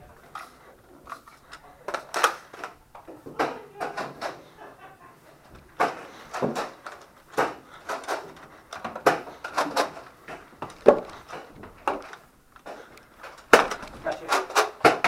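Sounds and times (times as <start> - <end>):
foam balls hitting walls: 5.6 - 15.0.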